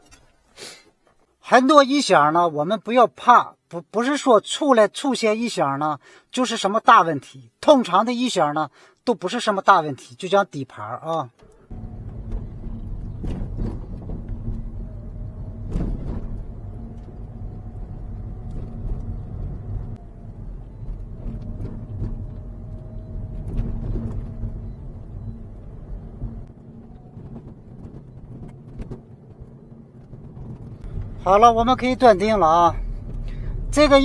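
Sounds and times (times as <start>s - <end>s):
road and tyre rumble: 11.3s - 34.0s
bumper rattling knocks: 11.5s - 34.0s.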